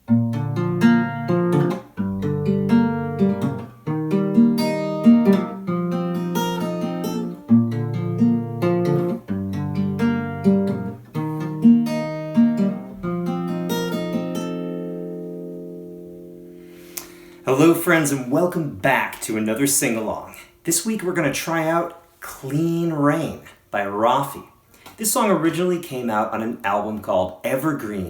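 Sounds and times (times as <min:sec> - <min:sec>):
acoustic guitar playing: 0:00.0 - 0:21.3.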